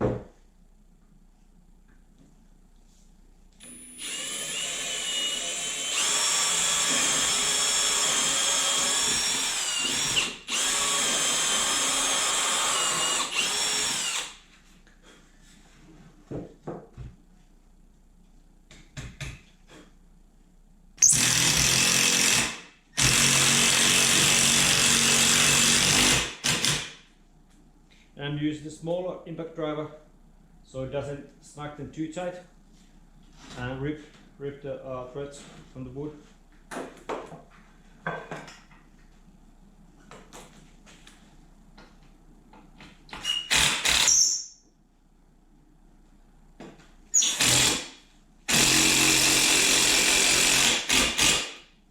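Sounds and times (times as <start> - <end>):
impact driver whining: 21.0 - 27.0, 47.2 - 51.6.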